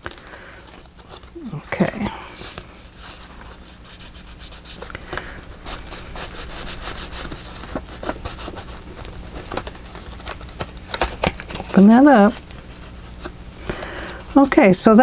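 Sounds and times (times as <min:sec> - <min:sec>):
paper rubbed down by hand: 0:01.2 - 0:09.4.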